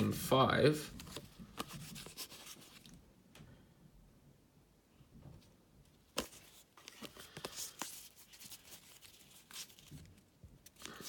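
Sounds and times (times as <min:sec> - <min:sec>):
cards rustling: 0:00.8 - 0:03.0, 0:06.0 - 0:11.0
card tapping: 0:01.0 - 0:02.9.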